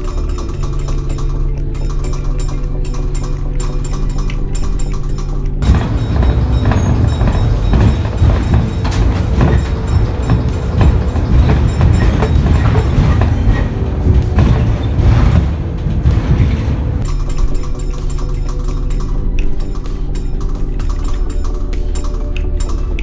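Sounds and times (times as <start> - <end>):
vehicle rumbling and rattling: 5.6 - 17.1.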